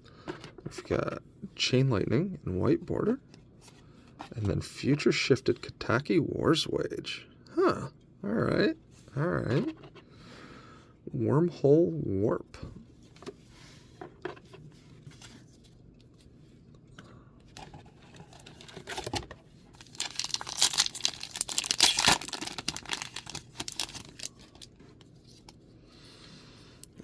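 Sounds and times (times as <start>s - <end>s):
wrapper tearing and crinkling: 19.8s - 24.7s.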